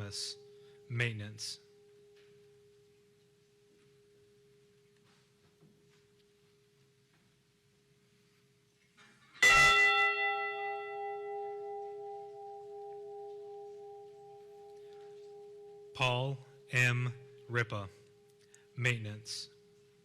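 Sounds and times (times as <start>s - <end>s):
bell tolling: 9.4s - 17.7s.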